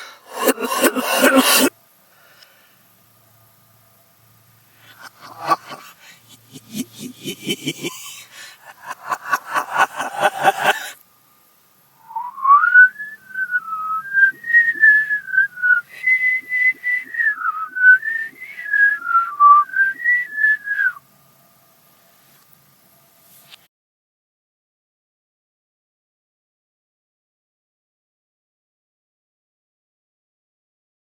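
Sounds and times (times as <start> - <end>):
rapid pulsing vocal sounds: 4.9 - 11.0
reversed whistled tune: 12.0 - 21.0.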